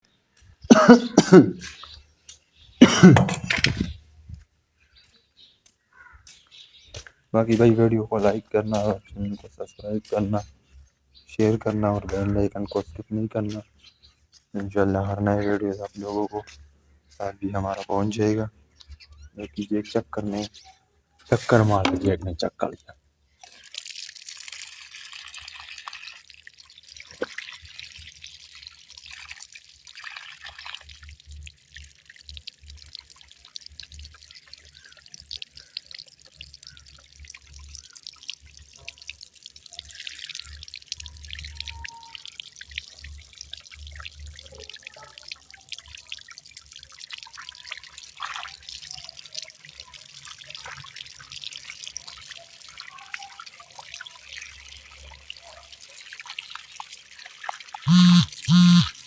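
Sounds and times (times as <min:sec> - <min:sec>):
water trickling and dripping: 0:00.0 - 0:59.0.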